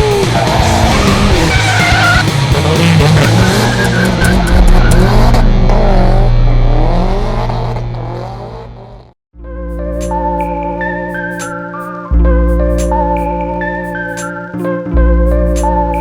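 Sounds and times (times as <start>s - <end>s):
car tyres squealing: 0.0s - 9.1s
car engine running: 0.0s - 9.2s.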